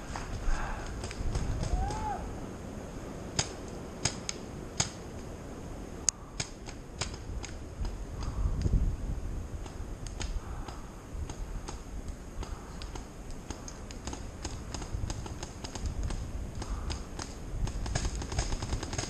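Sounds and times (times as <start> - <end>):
wind rumble on microphone: 0.0 - 19.0
paintball markers firing: 12.4 - 19.0.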